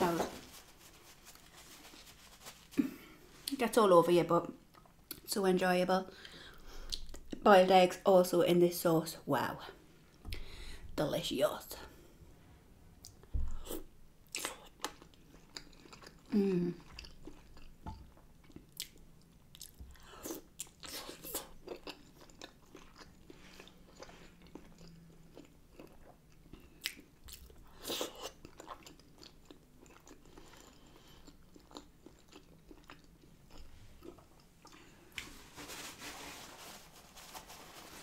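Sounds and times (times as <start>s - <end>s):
person chewing food: 13.0s - 35.3s.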